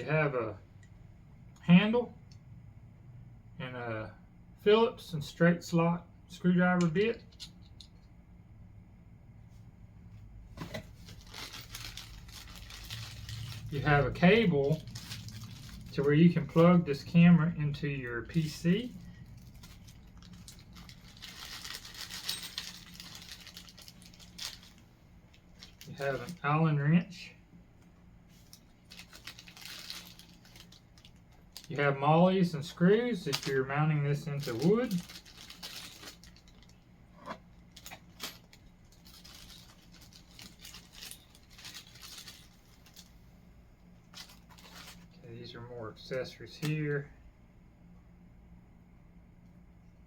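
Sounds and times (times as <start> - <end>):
plastic bag rustling: 10.6 - 26.5, 28.3 - 43.2, 44.0 - 45.2
plastic packaging crinkling: 10.6 - 26.5, 28.3 - 36.8, 37.5 - 43.2, 44.0 - 45.2.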